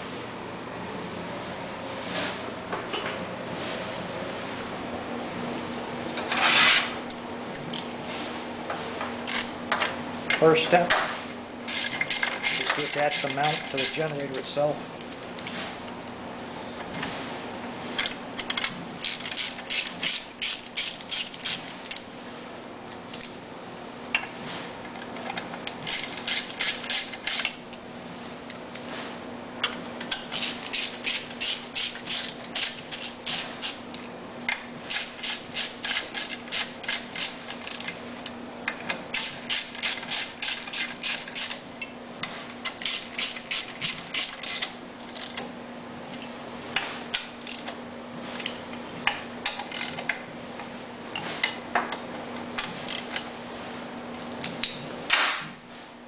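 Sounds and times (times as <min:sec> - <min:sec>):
steady low hum: 0:00.0 - 0:56.0
ratchet wrench clicking: 0:11.7 - 0:14.1, 0:18.0 - 0:22.0, 0:25.9 - 0:27.5, 0:30.0 - 0:33.8, 0:34.9 - 0:37.9, 0:39.1 - 0:41.6, 0:42.6 - 0:45.4, 0:49.5 - 0:50.1.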